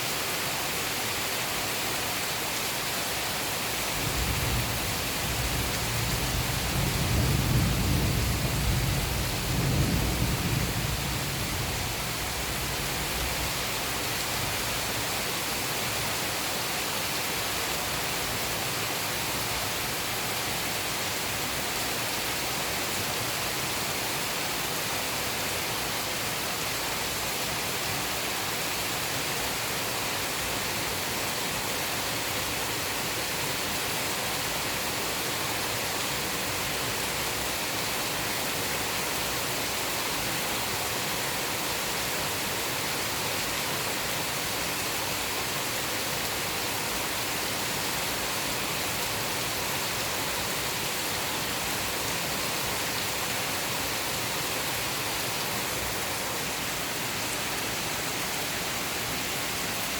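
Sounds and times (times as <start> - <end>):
heavy rain: 0.0 - 59.9
low rumble of thunder: 4.0 - 13.6.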